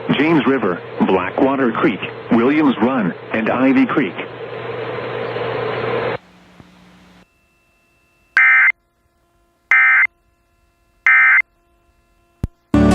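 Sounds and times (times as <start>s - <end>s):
radio hiss and hum: 0.0s - 7.2s
buzzing digital data tones: 7.3s - 8.8s, 9.7s - 12.3s.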